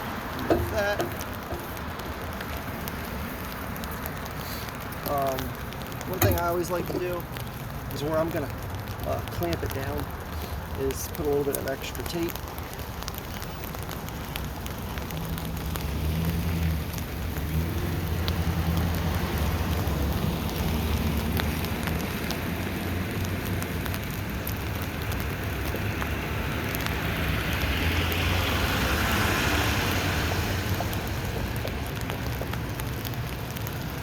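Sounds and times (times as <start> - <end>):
rain pattering on tent: 0.0 - 34.0
hiss: 4.4 - 5.4.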